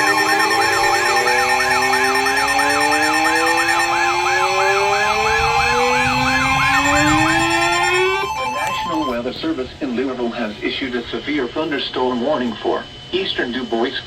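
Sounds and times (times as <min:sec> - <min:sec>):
warbling electronic alert tone: 0:00.0 - 0:09.2.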